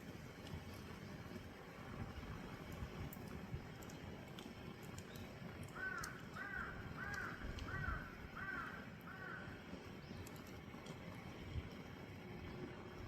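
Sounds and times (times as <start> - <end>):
bird calling: 5.8 - 10.3.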